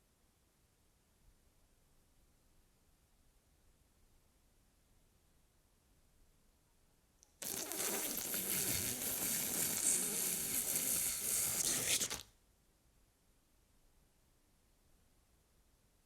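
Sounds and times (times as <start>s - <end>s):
loud hissing noise: 7.4s - 12.2s.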